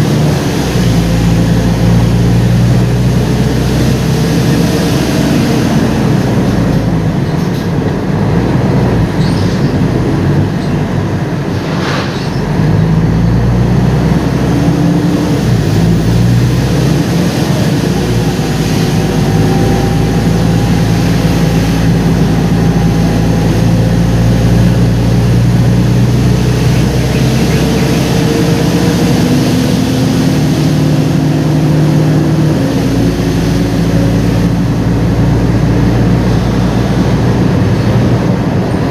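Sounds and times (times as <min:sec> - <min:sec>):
bus diesel engine running: 0:00.0 - 0:38.9
gearbox whine rising in pitch: 0:08.6 - 0:38.9.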